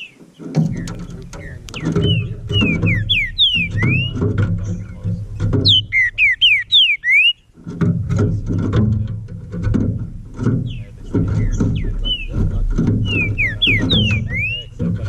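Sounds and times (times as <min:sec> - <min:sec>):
bird whistling song: 0:00.0 - 0:07.5, 0:10.6 - 0:14.8
low crackling rustling noise: 0:00.0 - 0:15.0.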